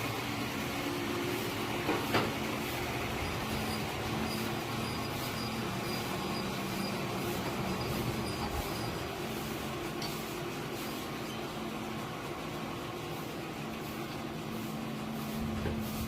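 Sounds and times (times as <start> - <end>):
sawmill machinery humming: 0.0 - 16.0.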